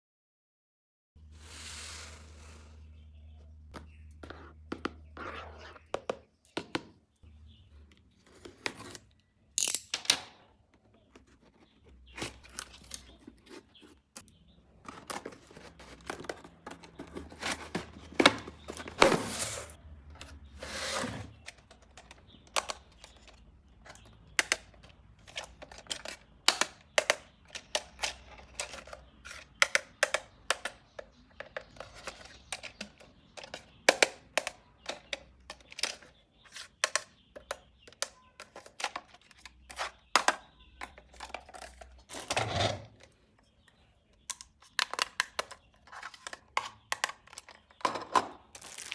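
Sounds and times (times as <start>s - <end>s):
plastic and cardboard rustling: 10.8s - 24.2s, 45.4s - 48.9s.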